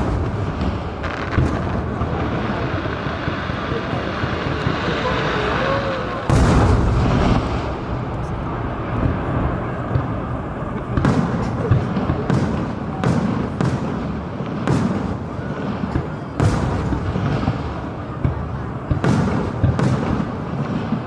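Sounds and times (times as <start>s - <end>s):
fireworks bangs: 0.0s - 21.0s
low rumble: 4.5s - 12.3s.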